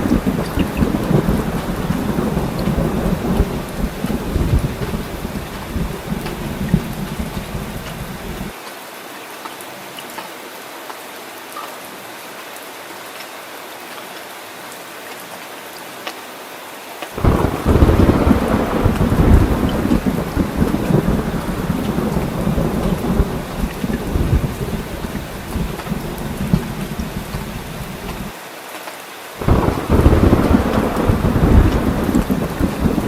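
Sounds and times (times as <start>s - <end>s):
rolling thunder: 0.0s - 8.5s, 17.2s - 28.3s, 29.4s - 33.0s
heavy rain: 0.0s - 33.0s.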